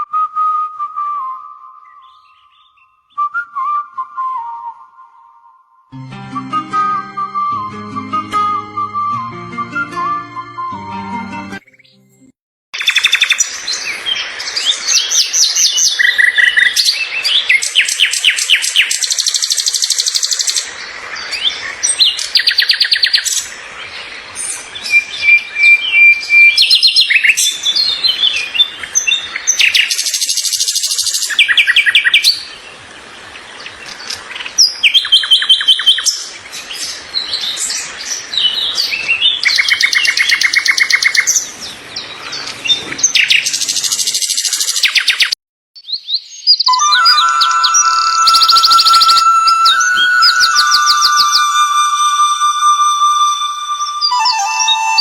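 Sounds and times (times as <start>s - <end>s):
small birds chirping and trilling: 1.8s - 3.2s, 12.8s - 51.4s.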